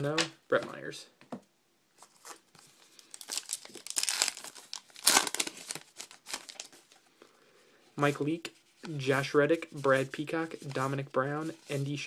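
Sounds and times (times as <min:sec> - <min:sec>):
foil wrapper tearing and crinkling: 0:03.1 - 0:06.7.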